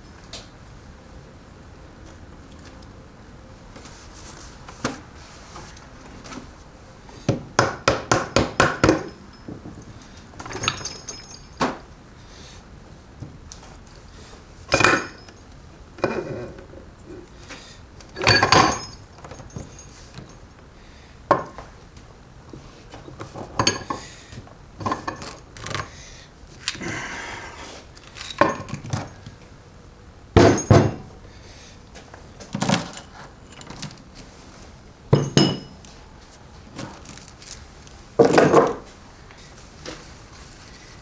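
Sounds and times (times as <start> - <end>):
metal parts and tools clanking: 8.9 - 11.8, 14.7 - 16.7, 18.0 - 20.5, 23.0 - 24.1, 24.8 - 25.9, 27.9 - 29.3, 30.4 - 31.1, 32.4 - 34.3, 35.2 - 35.9.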